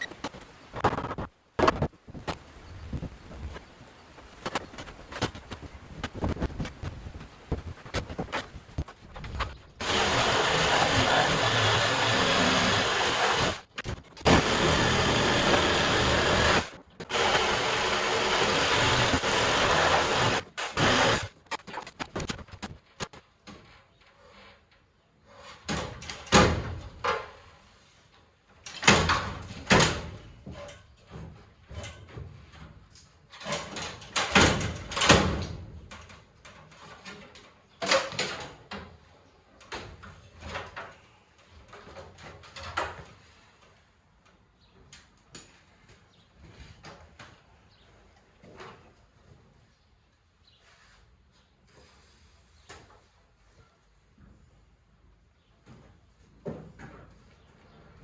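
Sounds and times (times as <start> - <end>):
power tool running: 9.8 - 13.7, 14.3 - 21.3.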